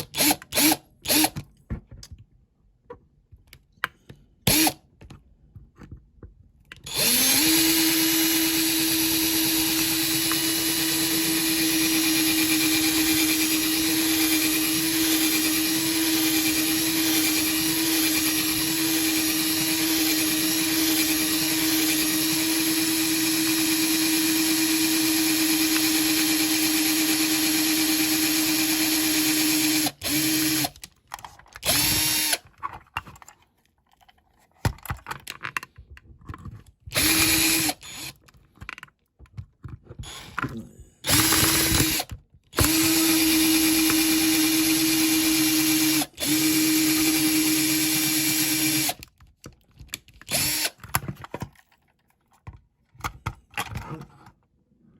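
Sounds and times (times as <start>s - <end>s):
small electric drill running: 0.0s - 1.4s, 4.5s - 4.8s, 6.8s - 30.7s, 31.6s - 32.4s, 36.9s - 38.2s, 40.0s - 40.4s, 41.0s - 49.0s, 50.3s - 50.8s.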